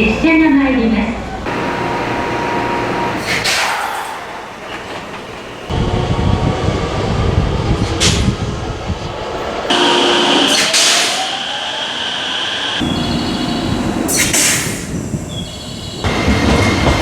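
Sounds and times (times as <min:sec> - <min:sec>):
air compressor running: 0:01.5 - 0:04.6
sharp hiss of air: 0:12.8 - 0:15.6.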